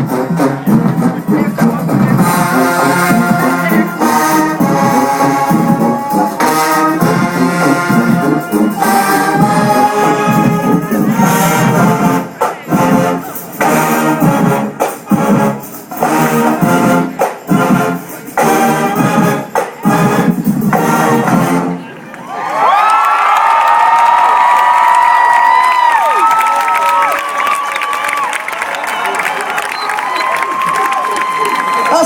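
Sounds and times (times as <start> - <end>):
marching drums: 0.0 - 21.8
brass playing held chords: 0.0 - 21.9.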